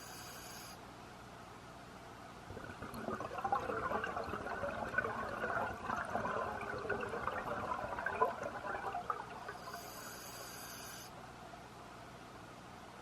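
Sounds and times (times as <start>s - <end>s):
underwater bubbling and gurgling: 2.5s - 10.1s.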